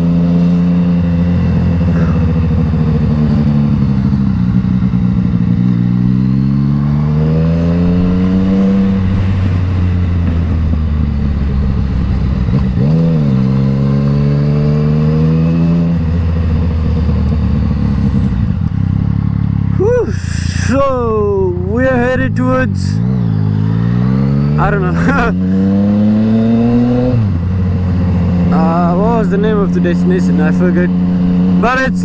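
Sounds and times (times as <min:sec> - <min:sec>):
motorcycle engine running: 0:00.0 - 0:32.0.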